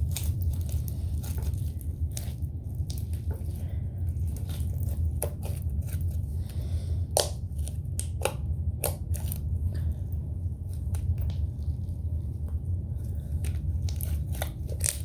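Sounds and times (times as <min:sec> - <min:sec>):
slime kneaded by hand: 0:00.0 - 0:15.0.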